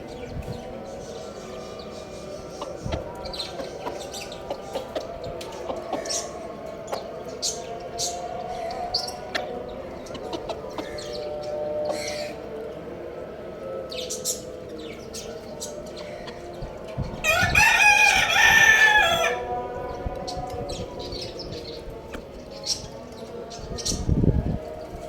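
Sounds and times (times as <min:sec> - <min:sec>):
small birds chirping: 0:00.0 - 0:25.0
rooster crowing: 0:17.2 - 0:19.6.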